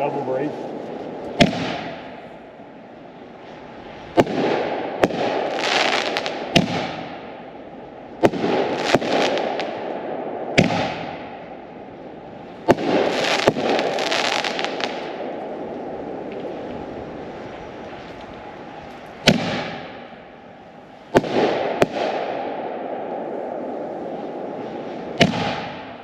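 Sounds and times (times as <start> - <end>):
firework hiss: 0.0 - 26.0
firework shells bursting: 1.0 - 2.4, 4.0 - 7.4, 12.6 - 15.6, 18.0 - 22.6, 24.8 - 26.0.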